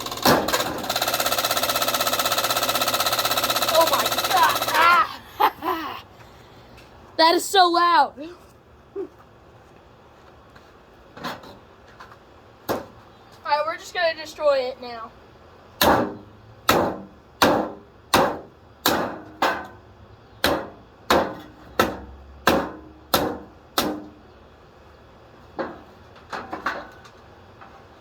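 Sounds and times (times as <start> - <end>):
hard blows smashing a fan: 0.0 - 5.0.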